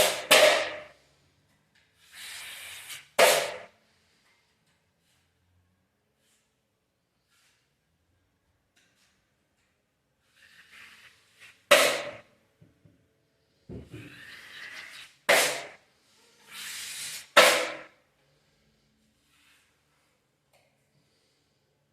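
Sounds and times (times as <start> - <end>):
drywall tool scraping: 0.0 - 1.0, 2.0 - 4.2, 10.2 - 12.3, 13.8 - 18.0, 19.1 - 20.2.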